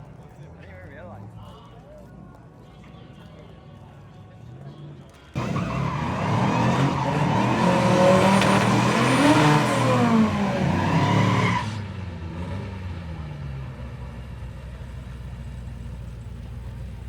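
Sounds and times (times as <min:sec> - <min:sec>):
racing car engine at high revs: 0:05.4 - 0:13.6.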